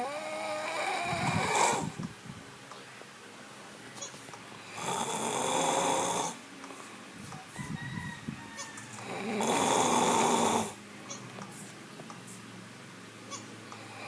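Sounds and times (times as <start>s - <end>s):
loud snores: 0.0s - 2.0s, 4.6s - 6.4s, 9.0s - 10.8s, 13.8s - 14.0s.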